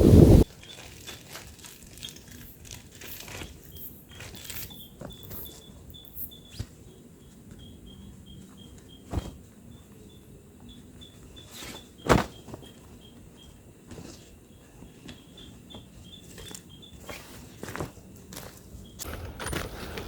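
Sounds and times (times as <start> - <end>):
insect chirping: 0.2 - 13.8.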